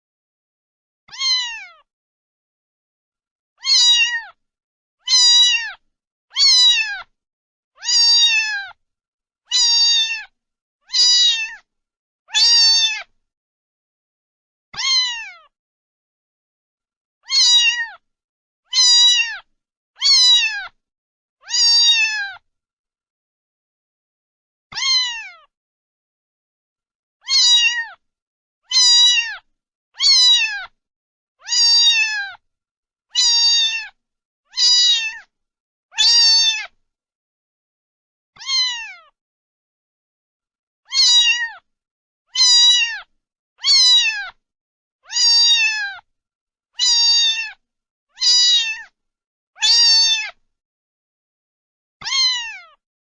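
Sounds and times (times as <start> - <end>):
cat meowing: 1.1 - 1.9, 3.6 - 4.4, 5.0 - 7.1, 7.8 - 8.8, 9.5 - 10.3, 10.9 - 11.7, 12.3 - 13.1, 14.8 - 15.5, 17.2 - 18.0, 18.7 - 20.8, 21.4 - 22.4, 24.7 - 25.5, 27.2 - 28.0, 28.7 - 30.8, 31.4 - 32.4, 33.2 - 35.3, 35.9 - 36.8, 38.4 - 39.2, 40.9 - 41.7, 42.3 - 44.4, 45.0 - 46.1, 46.8 - 47.6, 48.2 - 49.0, 49.6 - 50.4, 52.0 - 52.8.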